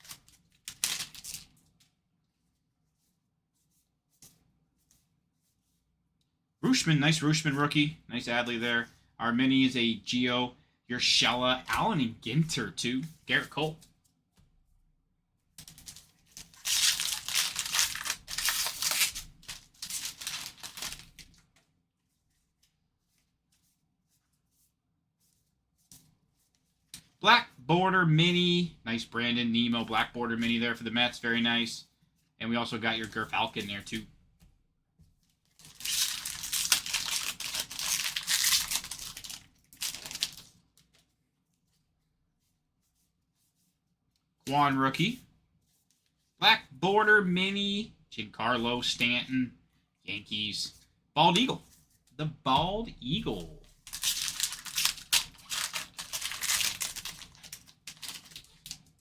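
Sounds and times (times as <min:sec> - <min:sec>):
foil wrapper tearing and crinkling: 0:00.0 - 0:01.5, 0:15.7 - 0:21.4, 0:35.5 - 0:40.6, 0:53.7 - 0:59.0.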